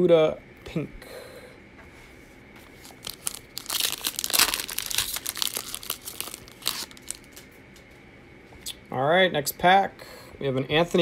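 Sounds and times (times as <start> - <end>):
wrapper tearing and crinkling: 2.8 - 7.5.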